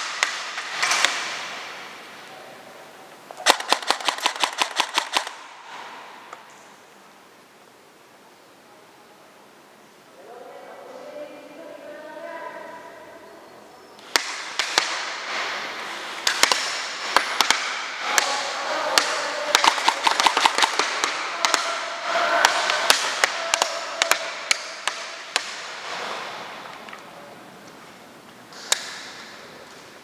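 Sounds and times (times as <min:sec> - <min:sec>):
steady hiss: 0:00.0 - 0:12.3, 0:13.3 - 0:20.2, 0:24.3 - 0:30.0
gunshots: 0:03.4 - 0:06.2, 0:14.0 - 0:26.6.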